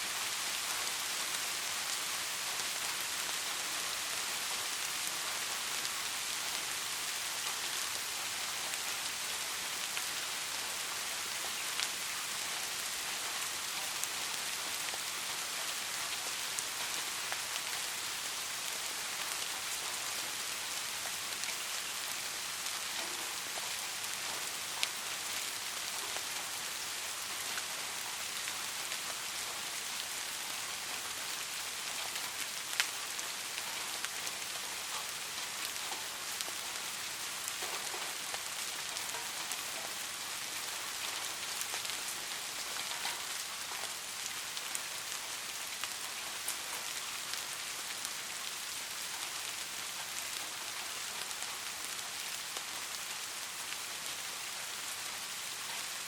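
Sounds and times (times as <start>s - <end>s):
rain hissing: 0.0s - 56.0s.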